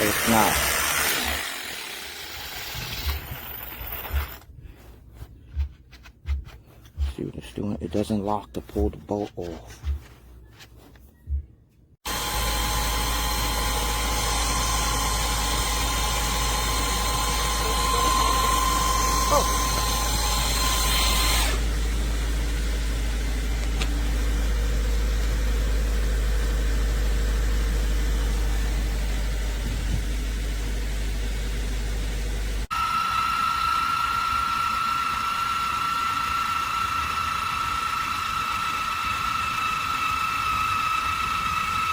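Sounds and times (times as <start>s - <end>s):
electric impact wrench whirring: 0.0s - 4.4s, 12.0s - 24.2s
small electric motor whining: 0.0s - 4.4s, 12.0s - 22.1s, 32.7s - 41.9s.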